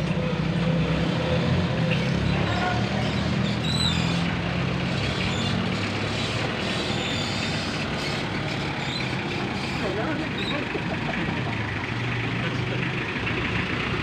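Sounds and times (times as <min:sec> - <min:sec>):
road noise rumble: 0:00.0 - 0:14.0
vehicle engine running: 0:00.0 - 0:14.0.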